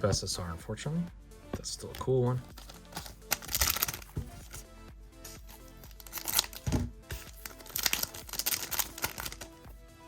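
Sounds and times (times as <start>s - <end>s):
quiet background music: 0.0s - 10.0s
card pack wrapper crinkling: 2.5s - 4.6s, 5.5s - 9.6s.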